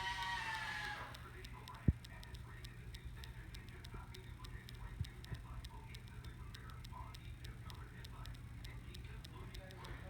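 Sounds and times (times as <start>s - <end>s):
low steady hum: 0.0s - 10.0s
light even ticking: 0.9s - 10.0s.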